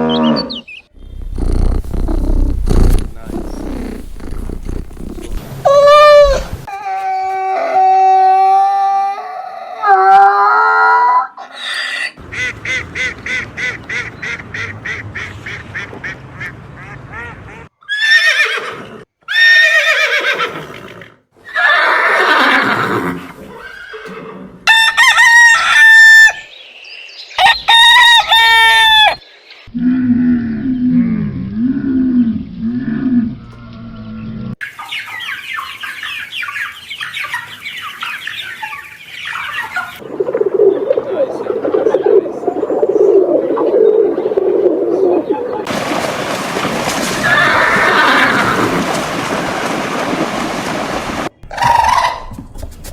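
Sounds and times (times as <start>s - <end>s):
animal calls: 0.0s - 15.0s, 44.9s - 50.8s, 51.4s - 52.4s.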